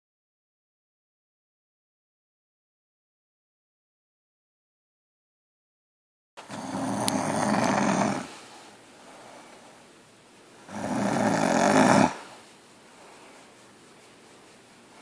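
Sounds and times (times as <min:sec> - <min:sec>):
woman snoring: 0:06.4 - 0:08.5, 0:10.7 - 0:12.3.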